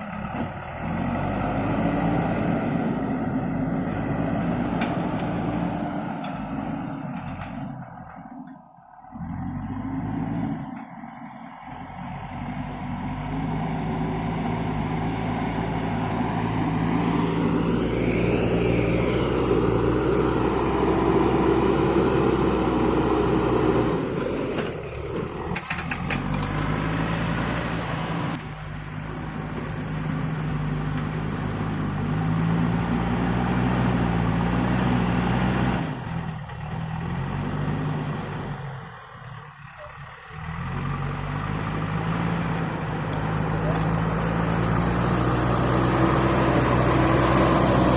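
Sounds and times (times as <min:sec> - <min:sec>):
diesel engine revving under load: 0:00.0 - 0:47.9.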